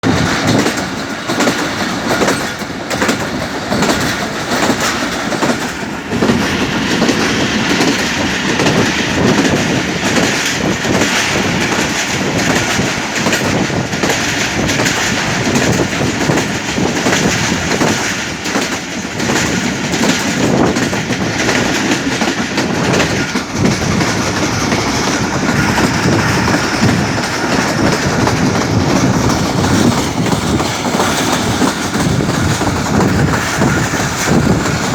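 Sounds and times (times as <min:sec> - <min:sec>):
train rumbling: 0:00.0 - 0:34.9
wheels clattering over rail joints: 0:00.0 - 0:34.9.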